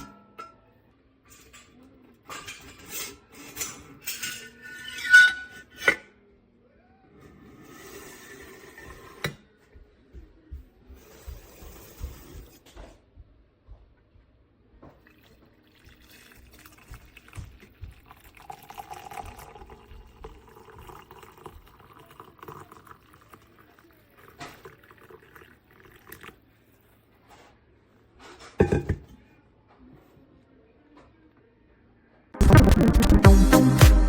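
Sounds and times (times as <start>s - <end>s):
liquid pouring into vessel: 15.0s - 26.4s.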